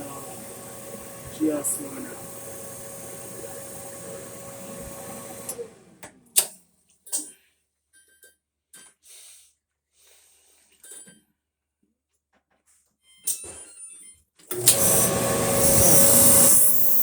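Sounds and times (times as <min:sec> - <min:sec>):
dryer motor humming: 0:00.0 - 0:06.2, 0:14.5 - 0:17.0.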